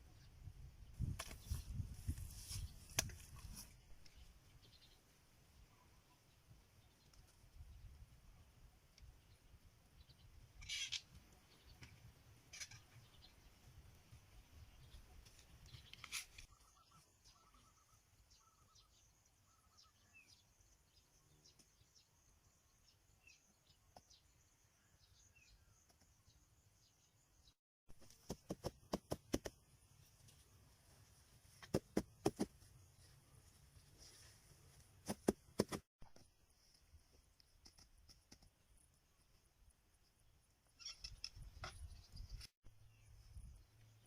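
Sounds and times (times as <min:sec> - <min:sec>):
small bird chirps: 0:14.6 - 0:27.6, 0:40.2 - 0:44.0.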